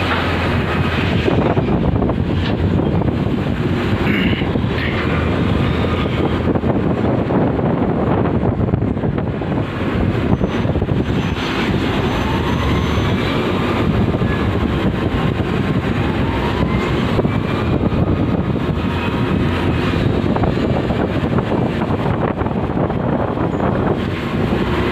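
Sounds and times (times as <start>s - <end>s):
heavy machinery rumbling: 0.0s - 24.9s
faint rising squeals: 10.2s - 14.6s.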